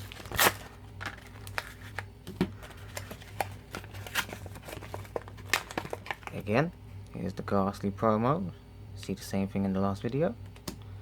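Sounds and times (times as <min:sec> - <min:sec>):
packaging crinkling: 0:00.0 - 0:06.4
low electrical hum: 0:00.0 - 0:11.0.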